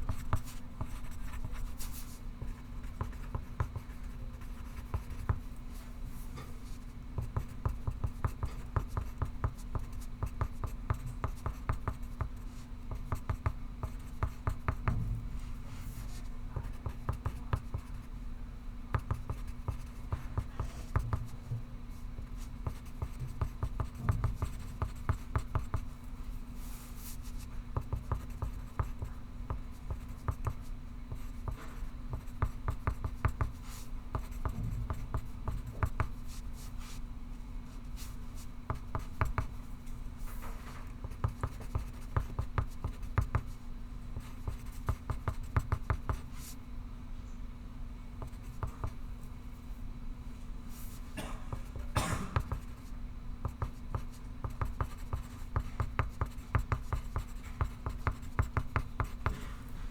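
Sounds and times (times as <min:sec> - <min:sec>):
low steady hum: 0:00.0 - 0:59.9
pencil scratching on paper: 0:00.1 - 0:02.2, 0:02.8 - 0:05.4, 0:53.4 - 0:59.3.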